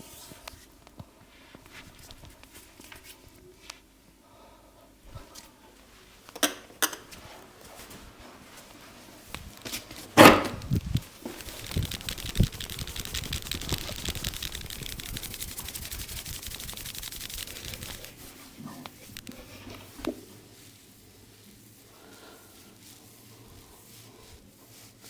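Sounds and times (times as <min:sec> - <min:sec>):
sharp hit on head: 0:10.2 - 0:10.6
patter of hand strokes on head: 0:10.7 - 0:25.0.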